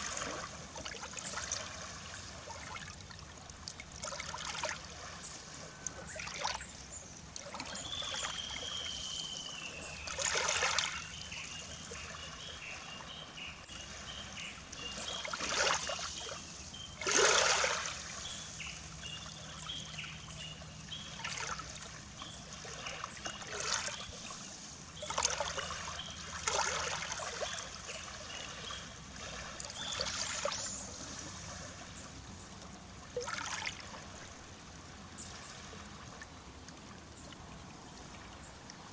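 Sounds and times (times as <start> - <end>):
sea waves lapping on shore: 0.0 - 38.9
bird calling: 7.6 - 21.6.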